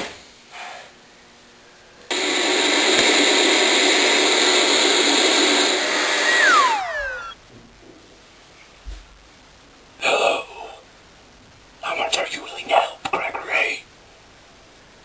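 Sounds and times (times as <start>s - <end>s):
electric motor whining: 2.1s - 7.4s.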